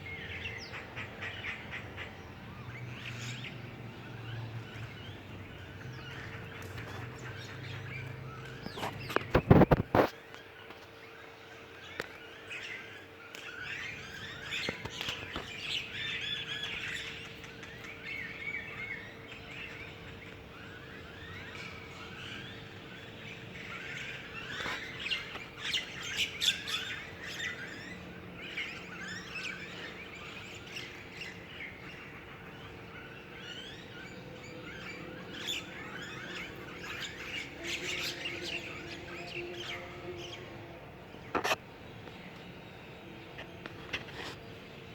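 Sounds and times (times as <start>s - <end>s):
small birds chirping: 0.0s - 44.9s.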